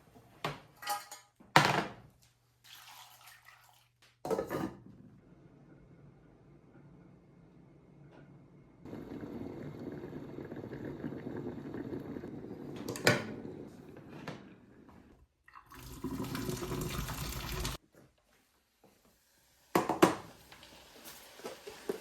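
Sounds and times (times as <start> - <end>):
water running from a tap: 15.5 - 17.8.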